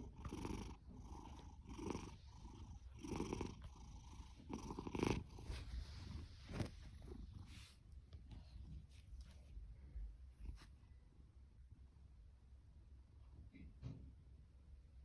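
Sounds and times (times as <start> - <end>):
cat purring: 0.0 - 9.5.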